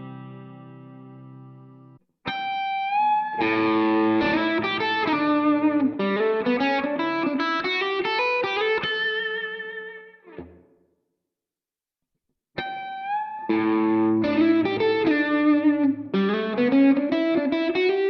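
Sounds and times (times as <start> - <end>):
electric guitar playing: 0.0 - 10.6, 12.6 - 18.0.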